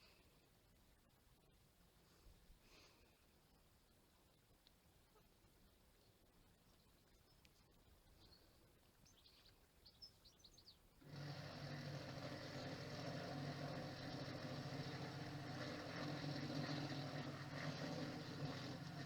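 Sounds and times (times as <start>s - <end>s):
steady mechanical hum: 11.0s - 19.0s.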